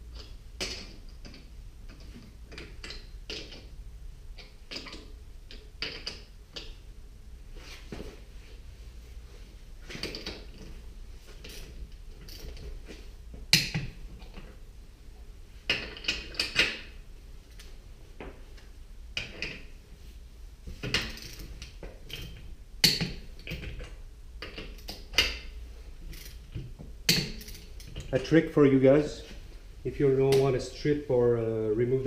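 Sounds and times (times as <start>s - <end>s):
metallic clinks and knocks: 26.1s - 28.1s.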